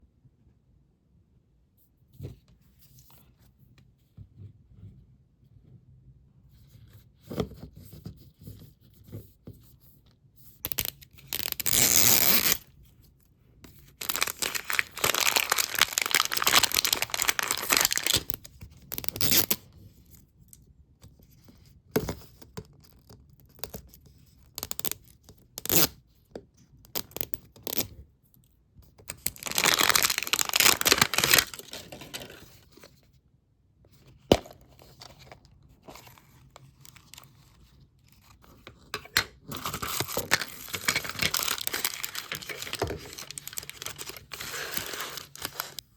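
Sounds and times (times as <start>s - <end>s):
packaging tearing and crinkling: 10.7s - 12.6s, 14.0s - 18.4s, 29.1s - 32.6s, 39.5s - 45.8s.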